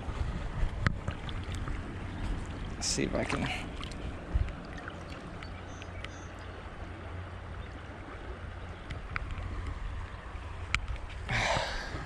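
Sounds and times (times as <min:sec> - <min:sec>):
creek water rushing: 0:00.9 - 0:12.0
faint clicks: 0:05.4 - 0:06.2.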